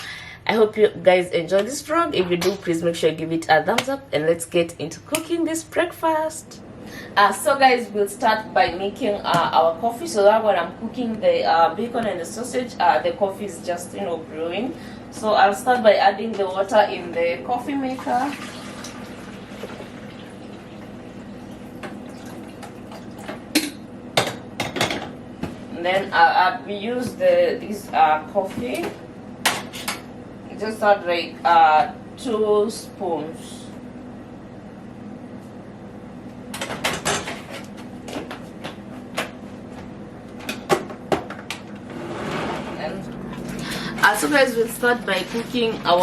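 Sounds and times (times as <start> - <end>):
steady low hum: 0.0 - 18.0, 20.1 - 46.0
water pouring into reservoir: 18.0 - 23.2.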